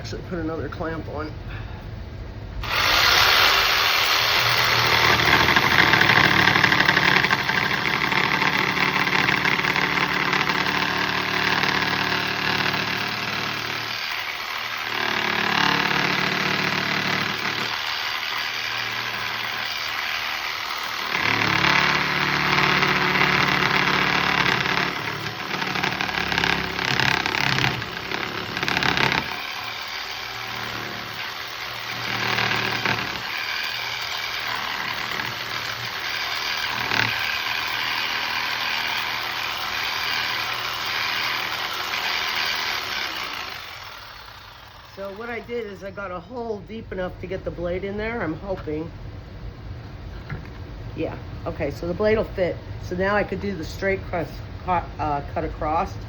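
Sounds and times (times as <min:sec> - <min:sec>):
electric jigsaw cutting wood: 0:02.6 - 0:45.8.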